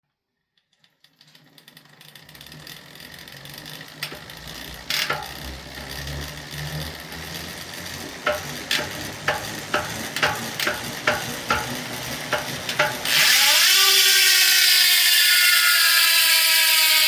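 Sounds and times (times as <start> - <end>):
bicycle hub ratchet buzzing: 1.0 - 17.0
loud knocks: 8.2 - 13.1.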